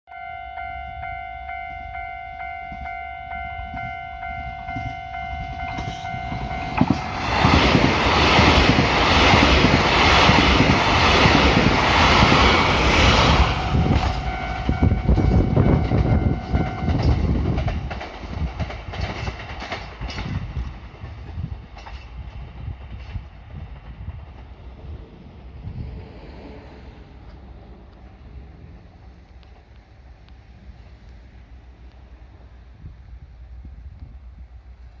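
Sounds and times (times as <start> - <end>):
level-crossing warning bell: 0.1 - 18.0
diesel train passing: 0.1 - 35.0.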